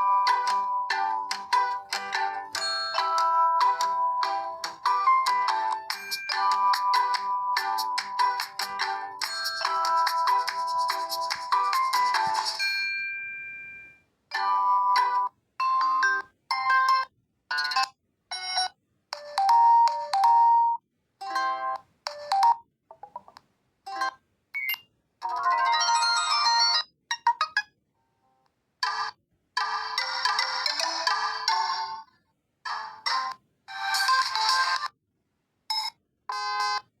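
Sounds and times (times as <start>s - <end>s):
phone ringtone melody: 0.0s - 22.6s, 24.6s - 26.9s.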